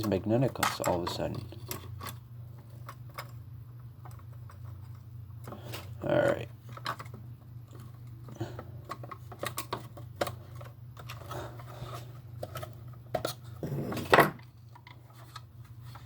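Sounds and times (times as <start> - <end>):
small parts clicking and clinking: 0.0 - 3.4, 4.0 - 11.4
parts clattering: 0.0 - 16.0.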